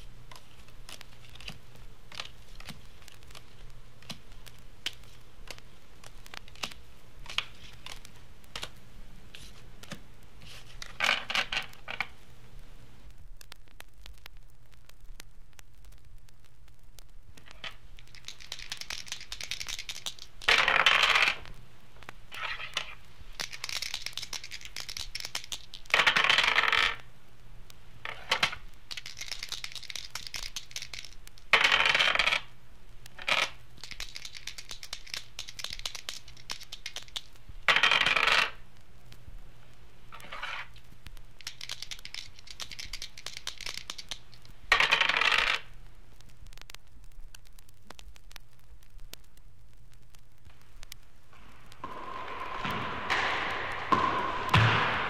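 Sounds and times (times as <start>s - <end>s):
dice rattling: 10.6s - 12.1s, 17.4s - 21.4s, 22.4s - 27.1s, 28.0s - 32.5s, 33.1s - 38.6s, 40.2s - 40.7s, 41.4s - 45.7s
dice clattering on hard surface: 10.8s - 12.1s, 17.5s - 21.4s, 22.4s - 27.1s, 28.0s - 32.5s, 33.2s - 38.6s, 40.2s - 40.7s, 41.4s - 45.7s.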